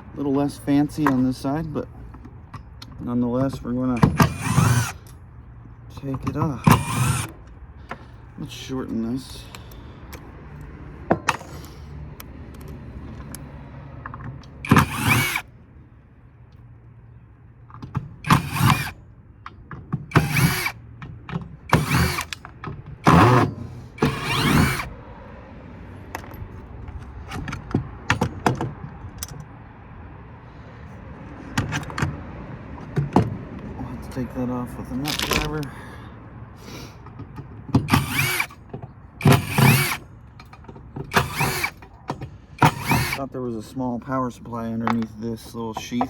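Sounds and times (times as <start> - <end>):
power drill running: 4.0 - 5.1, 6.7 - 7.4, 14.6 - 15.5, 18.2 - 19.0, 20.1 - 20.8, 21.7 - 22.4, 23.0 - 24.9, 37.9 - 38.6, 39.2 - 40.0, 41.1 - 41.8, 42.6 - 43.2
metal parts clattering: 35.0 - 35.7.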